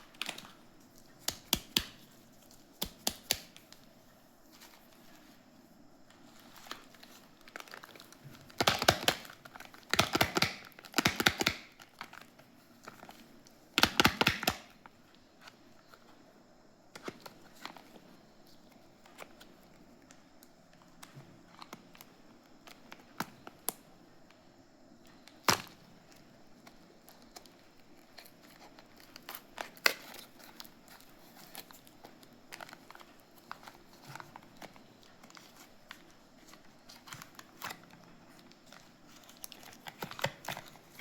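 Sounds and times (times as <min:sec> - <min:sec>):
packaging crinkling and tearing: 0:06.2 - 0:14.8, 0:25.1 - 0:41.0.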